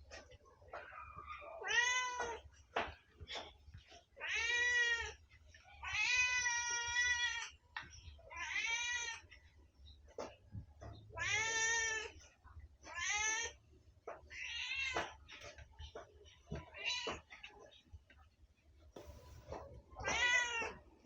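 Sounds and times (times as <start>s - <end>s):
cat meowing: 0.9s - 2.4s, 11.1s - 12.2s, 19.9s - 20.9s.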